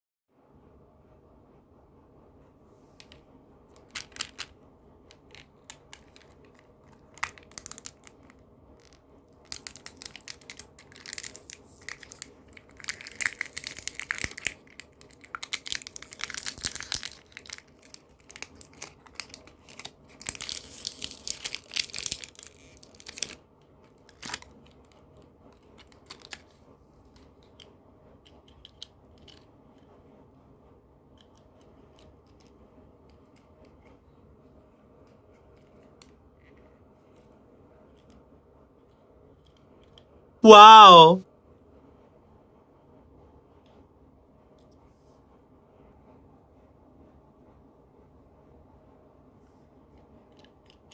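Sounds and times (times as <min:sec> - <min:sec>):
candy wrapper crinkling and tearing: 0:03.8 - 0:04.5, 0:05.1 - 0:23.4, 0:24.1 - 0:24.5, 0:25.8 - 0:26.4.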